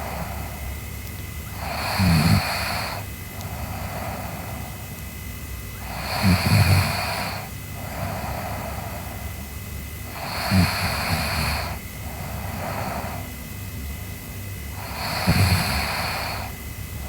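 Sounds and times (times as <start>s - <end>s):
girl snoring: 0.0s - 0.6s, 1.5s - 4.8s, 5.8s - 9.4s, 10.1s - 13.3s, 14.8s - 16.6s.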